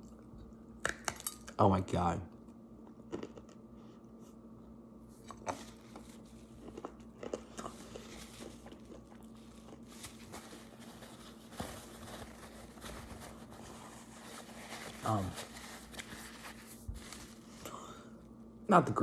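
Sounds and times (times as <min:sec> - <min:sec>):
steady low hum: 0:00.0 - 0:19.0
person biting and chewing cookie: 0:02.8 - 0:04.2, 0:05.2 - 0:10.8.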